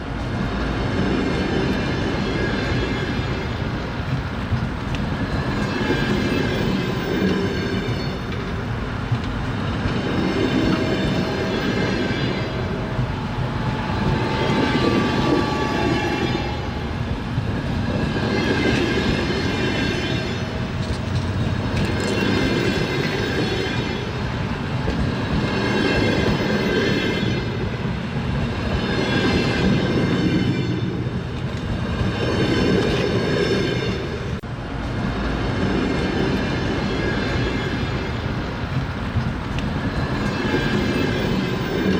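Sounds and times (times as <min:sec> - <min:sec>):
train wheels clattering on rails: 0:00.0 - 0:41.9.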